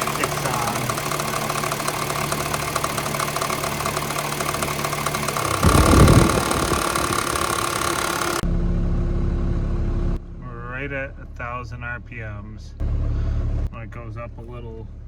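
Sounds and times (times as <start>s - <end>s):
car engine idling with belt rattle: 0.0s - 8.4s
brief loud low rumble: 5.4s - 8.2s.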